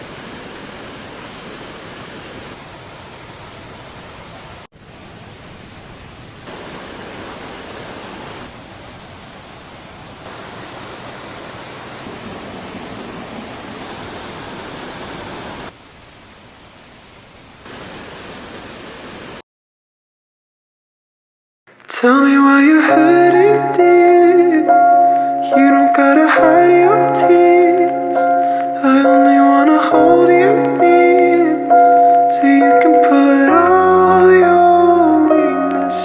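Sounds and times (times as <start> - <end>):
running water rushing: 0.0 - 19.4.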